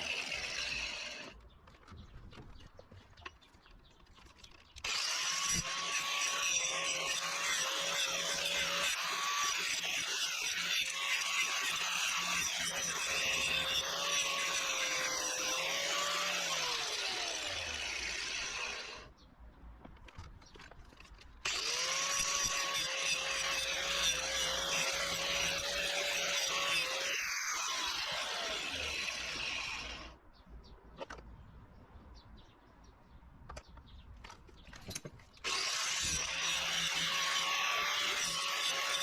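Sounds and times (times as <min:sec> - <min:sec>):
angle grinder grinding metal: 0:00.0 - 0:01.4, 0:04.8 - 0:19.0, 0:21.5 - 0:30.1, 0:35.4 - 0:39.0.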